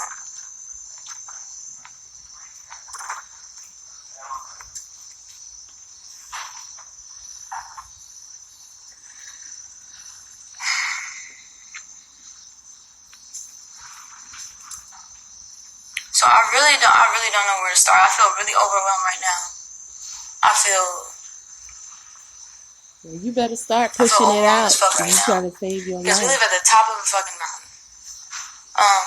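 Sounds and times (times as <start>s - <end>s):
high insect chirring: 0.0s - 29.0s.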